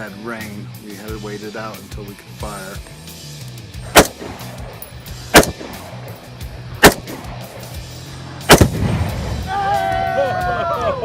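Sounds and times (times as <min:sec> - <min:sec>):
background music: 0:00.0 - 0:11.0
gunshots: 0:03.8 - 0:09.4.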